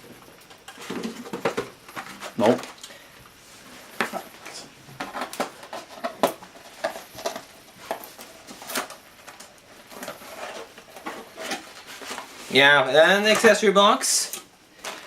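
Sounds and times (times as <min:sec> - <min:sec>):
plastic packaging clicks and rattles: 0:05.0 - 0:12.3, 0:14.3 - 0:15.0.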